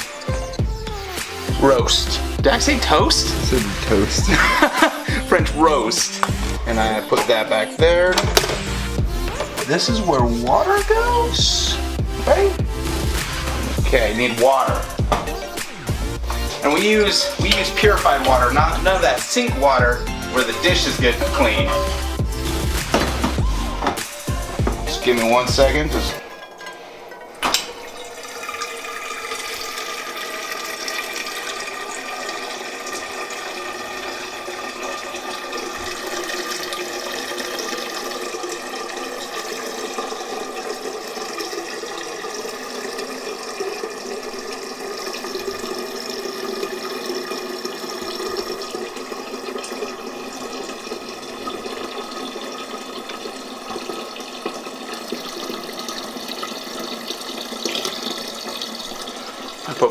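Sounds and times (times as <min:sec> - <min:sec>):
water running into container: 0:00.0 - 0:59.9.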